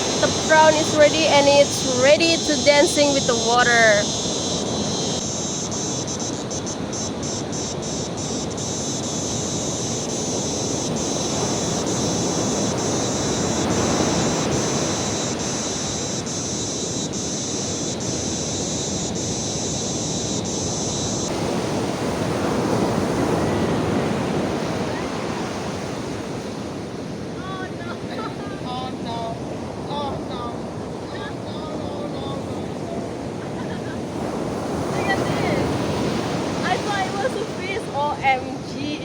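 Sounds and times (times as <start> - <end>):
high-pitched hiss with ticks: 0.0 - 21.6
waves breaking on beach: 0.0 - 39.0
wind on microphone: 0.0 - 39.0.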